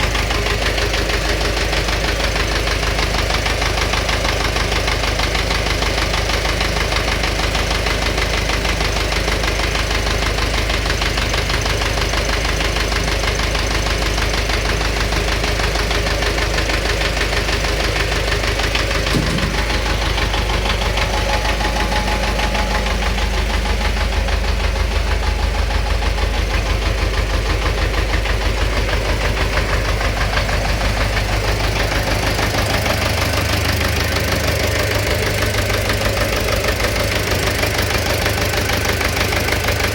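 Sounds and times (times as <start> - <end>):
engine knocking: 0.0 - 39.9
low thump: 19.1 - 20.6.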